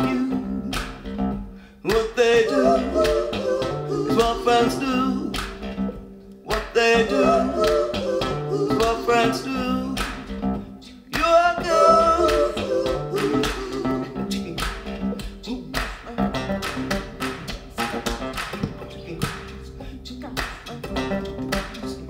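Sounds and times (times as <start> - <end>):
acoustic guitar: 0.0 - 22.0
woman singing: 2.3 - 5.4, 11.7 - 14.0, 19.8 - 20.9.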